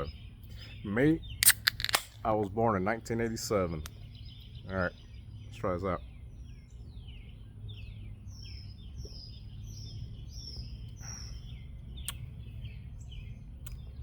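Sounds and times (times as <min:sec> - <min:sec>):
low outdoor rumble: 0:00.0 - 0:14.0
songbird chirping: 0:00.0 - 0:14.0
sharp click: 0:01.4 - 0:02.2.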